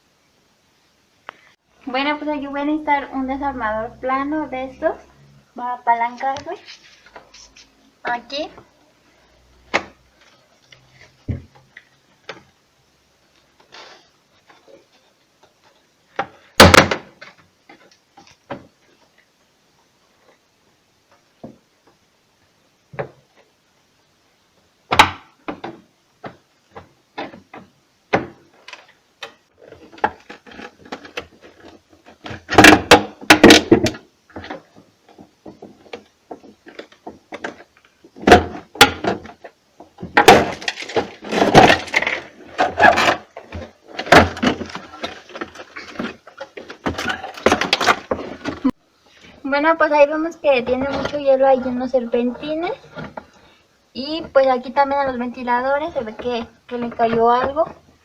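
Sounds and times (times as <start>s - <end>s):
plastic cracking and scraping: 28.6s - 48.8s.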